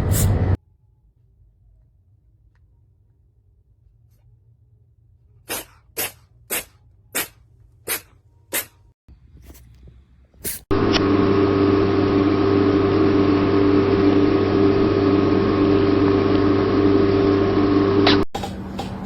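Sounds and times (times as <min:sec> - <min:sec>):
loud machine hum with tones: 0:10.7 - 0:19.0.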